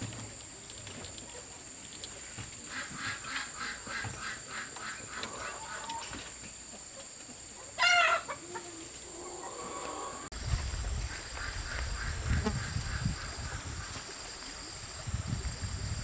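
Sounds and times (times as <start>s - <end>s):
chickens clucking: 1.2s - 14.6s
chicken squawk: 7.7s - 10.3s.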